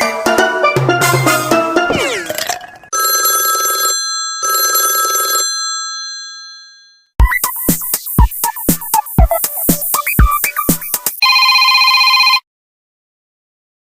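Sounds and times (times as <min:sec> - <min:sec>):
telephone bell ringtone: 0:02.9 - 0:07.2, 0:11.2 - 0:12.4
ringtone with drum beat and melody: 0:07.2 - 0:12.3.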